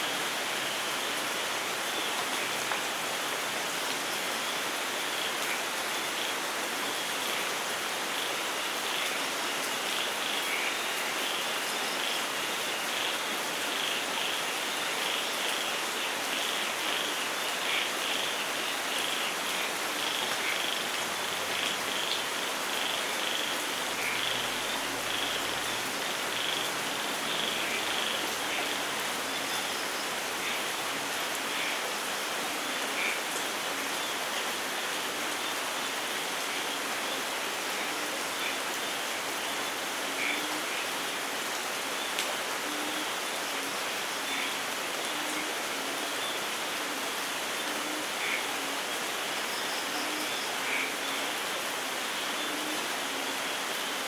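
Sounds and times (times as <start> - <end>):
steady rainfall: 0.0 - 54.0
frogs calling: 7.0 - 31.8, 46.2 - 53.8.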